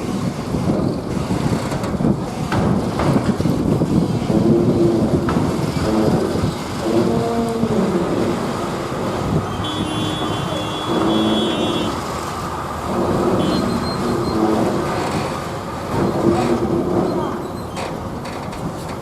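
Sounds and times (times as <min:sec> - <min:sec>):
heavy traffic rumbling: 0:00.0 - 0:19.0
horn tones: 0:09.5 - 0:12.1, 0:12.9 - 0:14.8.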